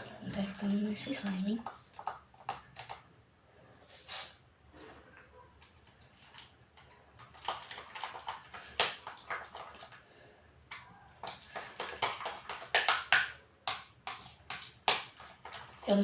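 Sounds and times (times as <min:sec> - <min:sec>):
slime squelching and popping: 0:06.2 - 0:10.0, 0:10.7 - 0:15.9.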